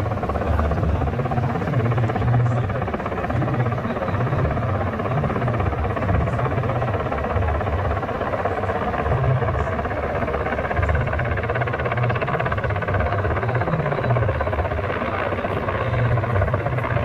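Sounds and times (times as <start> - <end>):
helicopter engines: 0.0 - 17.0
helicopter rotor beat: 0.0 - 17.0.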